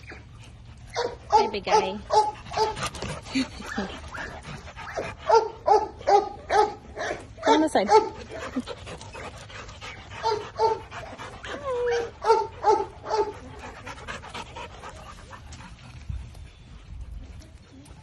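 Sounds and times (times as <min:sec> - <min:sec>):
dog panting: 0:00.0 - 0:18.0
dog barking: 0:01.0 - 0:02.8, 0:05.3 - 0:08.2, 0:12.2 - 0:13.3
dog whining: 0:11.4 - 0:13.4.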